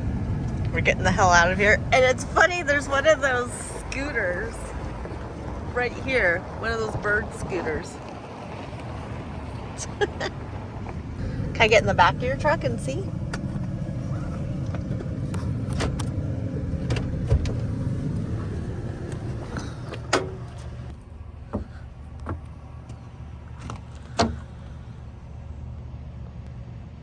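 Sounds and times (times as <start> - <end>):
engine idling with low rumble: 0.0 - 27.0
person climbing onto truck bed: 13.2 - 24.8.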